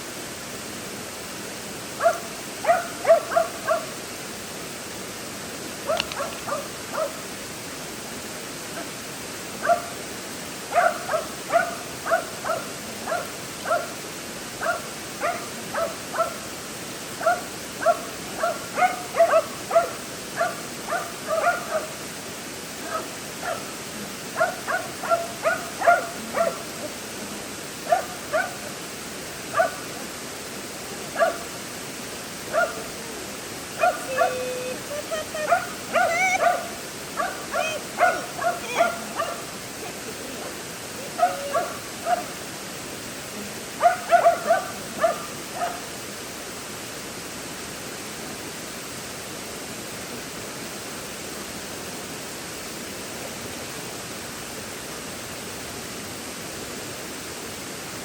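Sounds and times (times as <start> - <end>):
creek water rushing: 0.0 - 58.0
dog barking: 2.0 - 3.9, 5.9 - 7.2, 9.6 - 9.9, 10.7 - 13.9, 14.6 - 16.4, 17.2 - 22.0, 22.8 - 23.7, 24.4 - 26.7, 27.9 - 28.6, 29.5 - 29.8, 31.2 - 31.5, 32.5 - 32.9, 33.8 - 34.4, 35.5 - 39.5, 41.2 - 42.4, 43.8 - 45.9.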